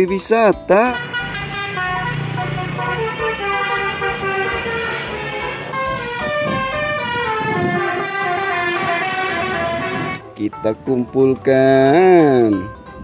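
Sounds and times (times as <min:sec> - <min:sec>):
bus horn playing a tune: 0:00.9 - 0:10.3.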